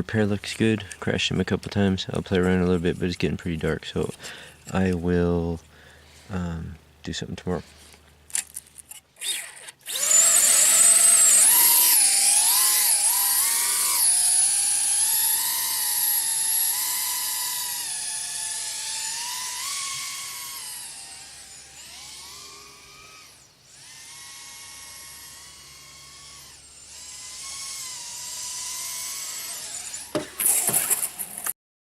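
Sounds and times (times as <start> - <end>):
drone propellers whining: 9.2 - 31.5.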